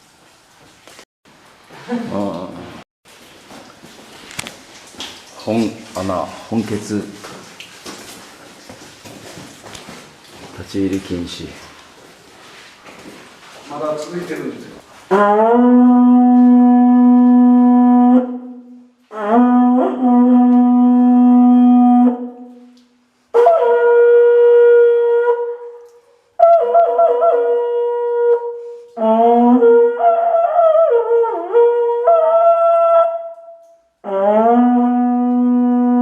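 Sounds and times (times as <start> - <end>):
conch shell trumpet blasts: 15.1 - 22.5, 23.3 - 25.6, 26.4 - 30.5, 31.8 - 36.0.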